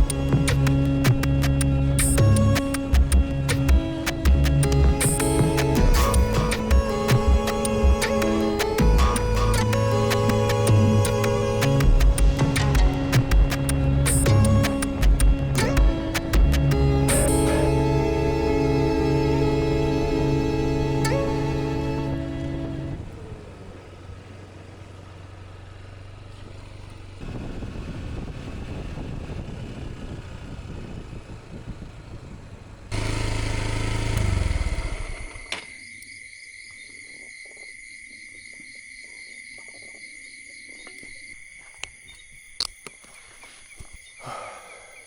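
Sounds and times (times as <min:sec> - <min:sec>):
sharp clicks: 0:00.0 - 0:17.8
motorbike engine: 0:00.0 - 0:35.8
insects chirring: 0:33.0 - 0:45.0.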